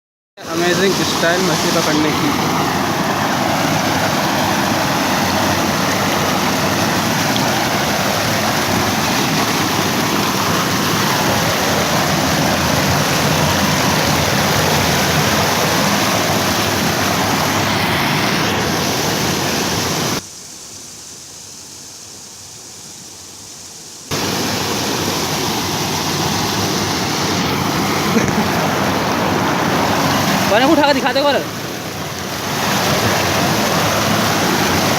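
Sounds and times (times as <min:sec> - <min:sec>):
rush of flowing water: 0:00.4 - 0:20.3, 0:24.1 - 0:34.9.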